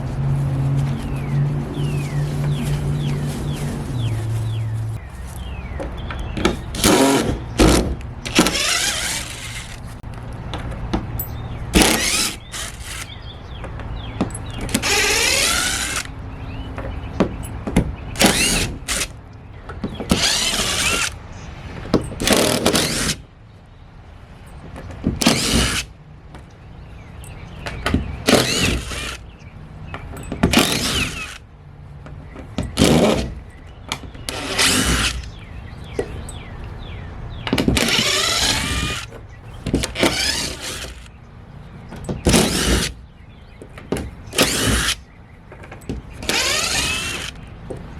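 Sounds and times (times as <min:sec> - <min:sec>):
cordless drill backing screws out: 0:37.6 - 0:39.1, 0:39.7 - 0:41.1, 0:44.4 - 0:45.0, 0:46.2 - 0:47.4.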